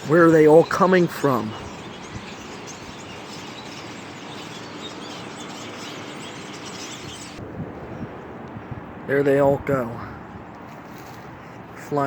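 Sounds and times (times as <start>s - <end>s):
flock of small birds chattering: 0.0s - 7.4s.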